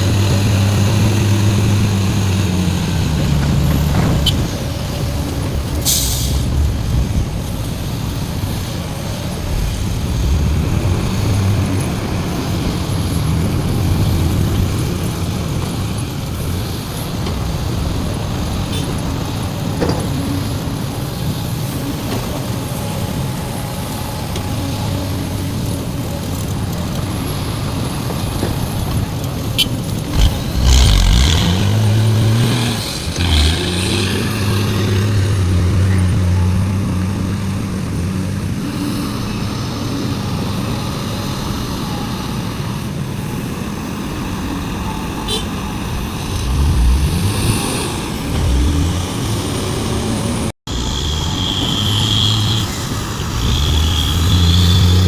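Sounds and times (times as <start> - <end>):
engine revving: 0.0 - 26.4, 29.5 - 42.7, 45.3 - 55.0
diesel engines droning: 0.0 - 55.0
air hiss: 5.8 - 6.5.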